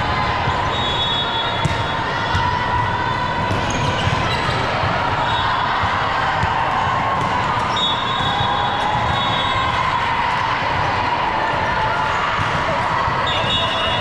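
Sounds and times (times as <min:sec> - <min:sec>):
crowd murmur: 0:00.0 - 0:14.0
volleyballs thudding: 0:01.6 - 0:02.7.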